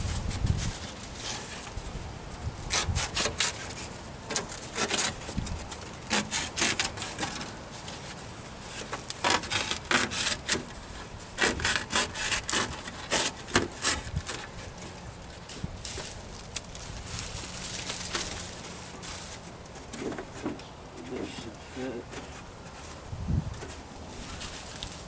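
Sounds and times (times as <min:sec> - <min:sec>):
hand saw cutting board: 0:02.7 - 0:03.7, 0:09.2 - 0:10.7, 0:11.4 - 0:14.5.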